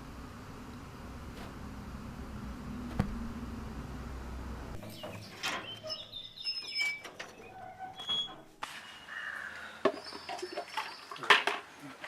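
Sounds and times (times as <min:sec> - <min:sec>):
birds chirping: 0:04.8 - 0:07.8, 0:08.6 - 0:11.2
crows cawing: 0:09.1 - 0:09.9.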